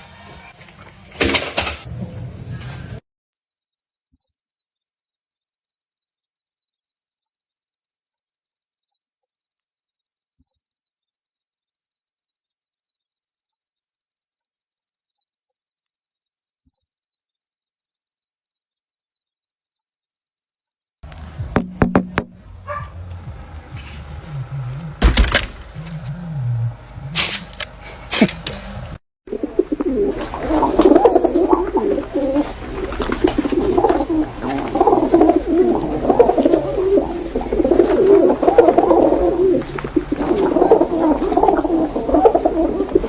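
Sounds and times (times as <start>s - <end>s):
insects chirring: 3.4s - 21.0s.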